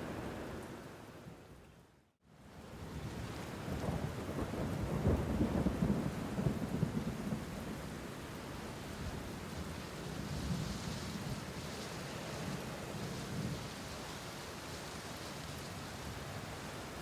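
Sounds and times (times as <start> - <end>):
steady rain: 0.0 - 17.0
thunder rumbling: 3.6 - 7.8.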